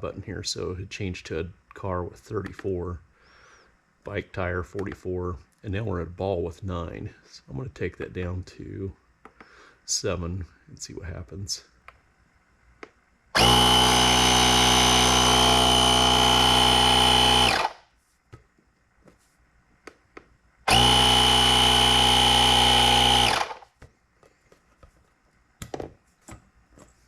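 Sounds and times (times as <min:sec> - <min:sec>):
air compressor motor buzzing: 0:13.4 - 0:17.8, 0:20.7 - 0:23.8.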